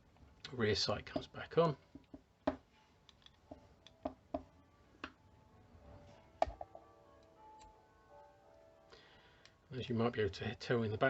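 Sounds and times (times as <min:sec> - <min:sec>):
faint church bells ringing: 0:06.8 - 0:10.1.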